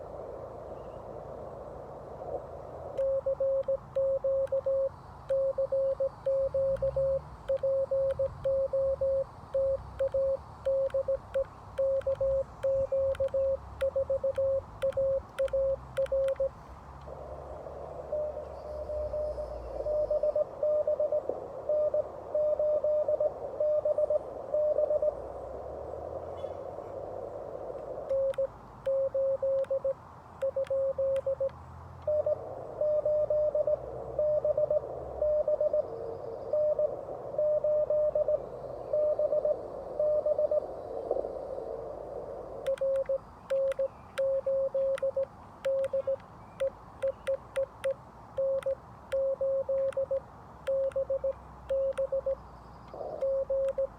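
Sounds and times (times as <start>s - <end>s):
morse code beeps: 3.0s - 16.6s, 18.1s - 19.3s, 19.9s - 25.1s, 28.1s - 35.8s, 42.7s - 52.4s, 53.0s - 53.9s.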